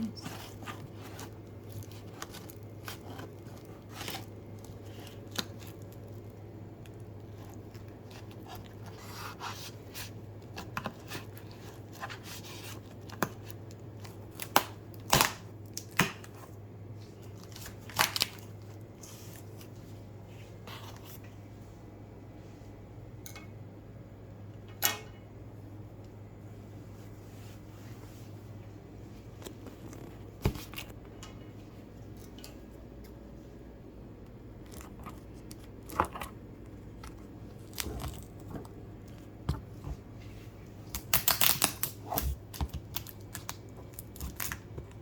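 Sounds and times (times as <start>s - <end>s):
steady low hum: 0.0s - 45.0s.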